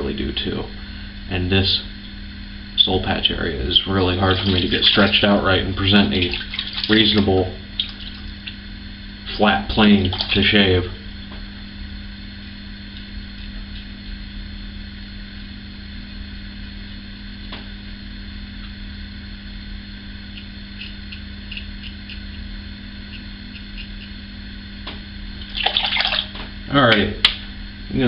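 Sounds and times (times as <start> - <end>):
low electrical hum: 0.0 - 28.0
razor scratching stubble: 20.3 - 24.2.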